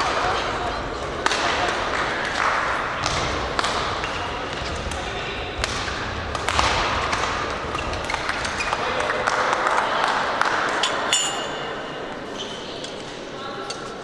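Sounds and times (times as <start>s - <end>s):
racket hitting shuttlecock: 0.0s - 12.2s
background voices: 0.0s - 14.0s
shoe squeak: 11.5s - 13.1s.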